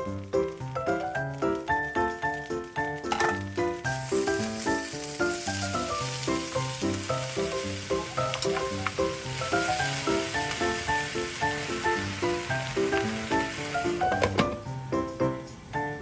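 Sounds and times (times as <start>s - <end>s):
bouncy plucked background music: 0.0s - 16.0s
food sizzling in a pan: 0.0s - 16.0s.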